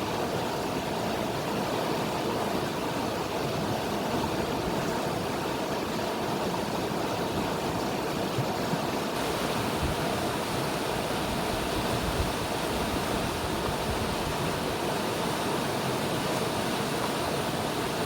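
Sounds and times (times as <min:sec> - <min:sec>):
river water flowing: 0:00.0 - 0:18.0.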